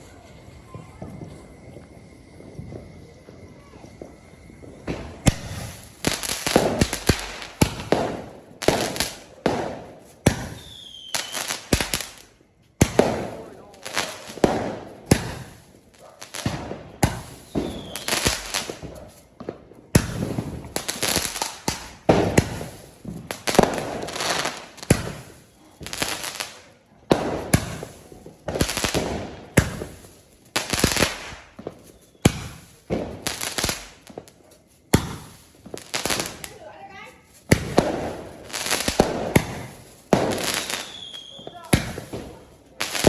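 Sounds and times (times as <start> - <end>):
firework hiss: 0.0 - 43.0
firework shots banging: 0.5 - 10.8, 12.8 - 13.5, 14.1 - 15.6, 16.4 - 18.9, 19.9 - 26.0, 27.1 - 30.1, 34.9 - 36.7, 37.4 - 43.0.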